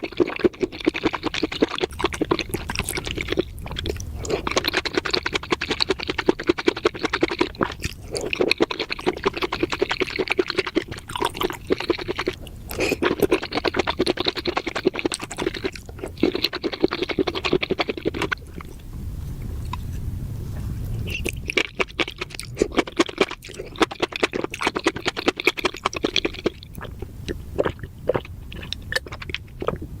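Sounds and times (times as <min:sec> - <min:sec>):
wet crunchy chewing: 0:00.0 - 0:30.0.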